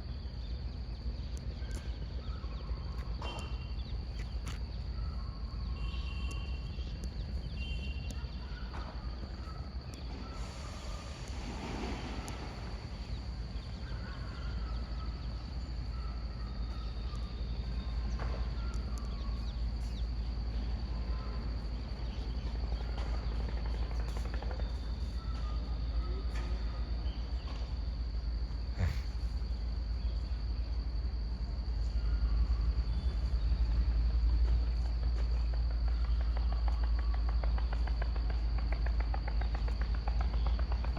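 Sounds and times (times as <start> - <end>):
faint chirps and clicks: 1.0 - 10.4, 13.1 - 20.6.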